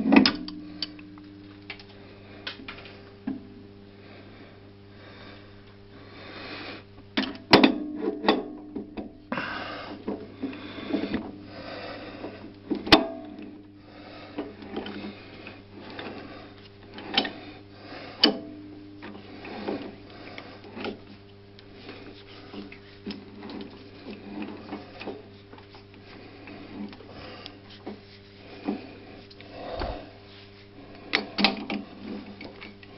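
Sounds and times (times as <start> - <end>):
steady low hum: 0.0 - 32.9
scraping and handling noise: 19.0 - 32.8.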